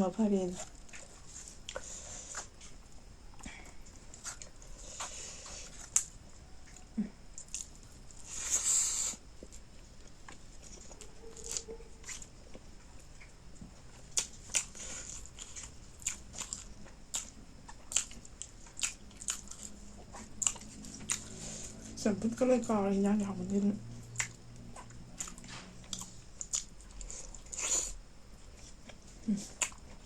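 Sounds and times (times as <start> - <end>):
chewing with wet clicks: 0.6 - 8.2, 9.4 - 21.8, 23.5 - 30.0.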